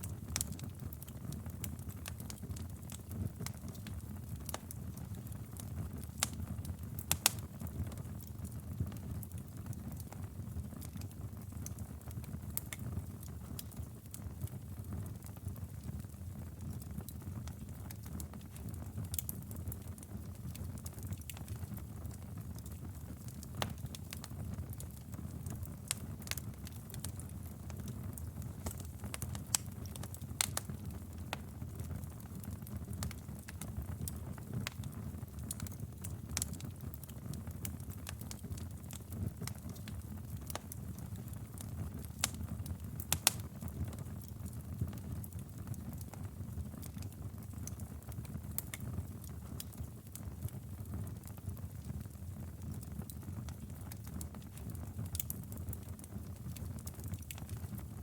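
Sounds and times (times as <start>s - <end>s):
low rumble of flames: 0.0s - 58.0s
wood fire crackling and popping: 0.0s - 58.0s.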